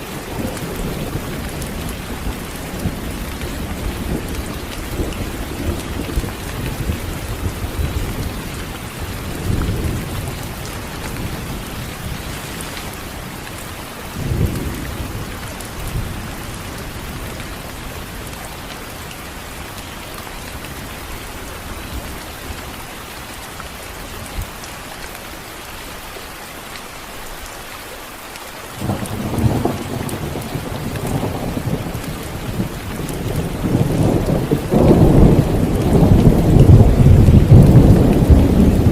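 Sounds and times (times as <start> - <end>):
steady rain: 0.0 - 38.9
rolling thunder: 0.1 - 13.5, 14.1 - 18.3, 28.8 - 38.9.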